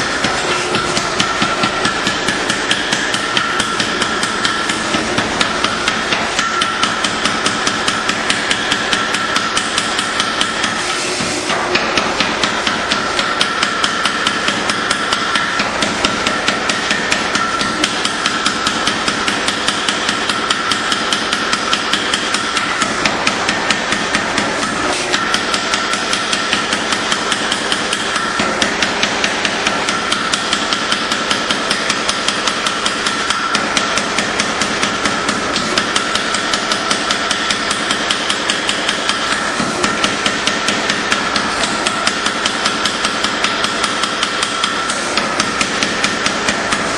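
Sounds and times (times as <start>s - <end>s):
constant machine hum: 0.0s - 46.9s.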